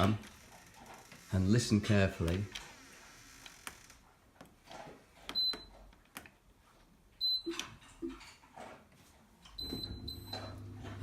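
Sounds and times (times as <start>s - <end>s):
dishwasher high beeps: 7.2s - 7.8s, 9.6s - 11.0s.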